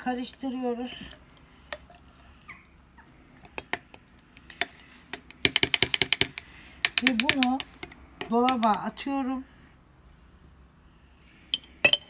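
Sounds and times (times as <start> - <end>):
spoon clicking against jar: 4.6 - 8.9.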